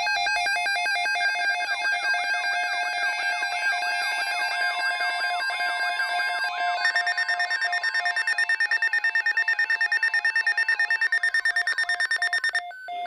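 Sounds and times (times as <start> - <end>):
pulsing multi-tone alert beeping: 6.3 - 13.0
steady high tone: 6.5 - 12.6
short beeps: 6.8 - 12.8.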